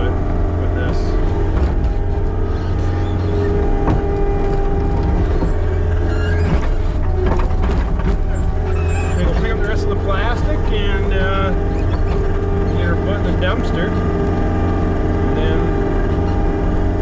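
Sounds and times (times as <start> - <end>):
skid steer loader engine running: 0.0 - 17.0
steady whine: 0.0 - 17.0
short knocks: 0.8 - 10.8.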